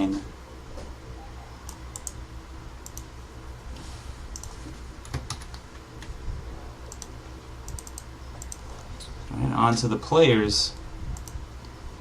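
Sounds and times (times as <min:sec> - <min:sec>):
low steady hum: 0:00.0 - 0:12.0
keyboard typing: 0:01.7 - 0:02.2, 0:04.3 - 0:05.6, 0:06.9 - 0:08.6.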